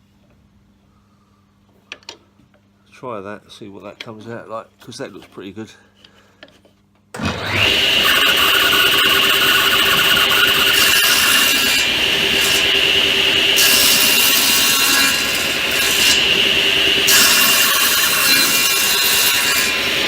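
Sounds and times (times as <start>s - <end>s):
saw cutting wood: 7.2s - 20.0s
table saw whining: 7.2s - 20.0s.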